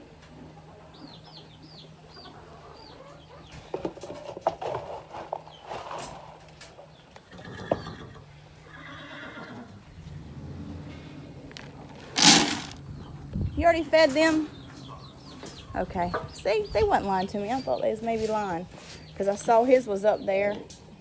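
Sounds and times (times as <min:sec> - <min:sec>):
horse whinnying: 0:07.3 - 0:09.7.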